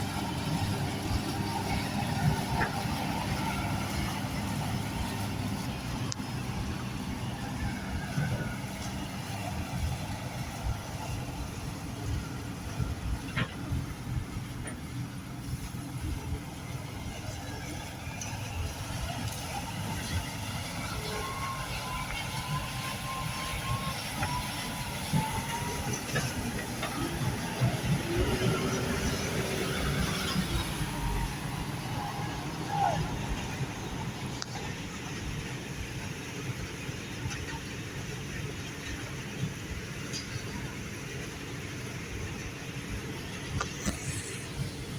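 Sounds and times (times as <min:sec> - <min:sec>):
loader diesel engine running: 0:00.0 - 0:44.9.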